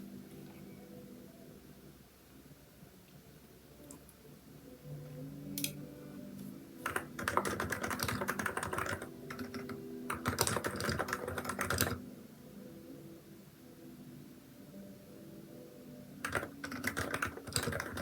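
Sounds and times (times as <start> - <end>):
typing on a keyboard: 6.8 - 12.0, 16.2 - 18.0.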